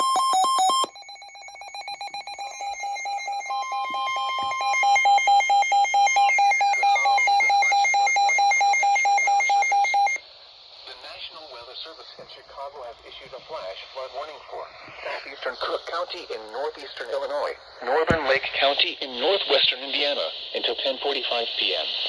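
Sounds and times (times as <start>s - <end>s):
rapid pulsing alarm beep: 0.0s - 10.2s
steady high tone: 0.8s - 10.2s.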